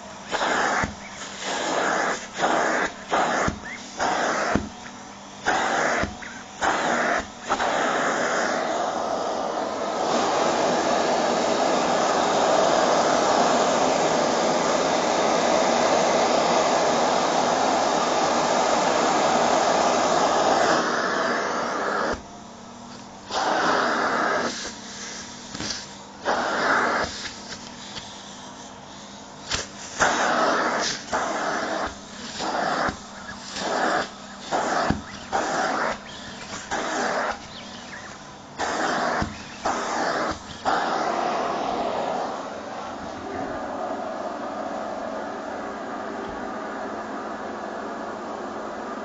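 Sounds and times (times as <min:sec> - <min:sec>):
vacuum cleaner suction: 0:00.0 - 0:48.0
bursts of rushing air: 0:29.2 - 0:45.0.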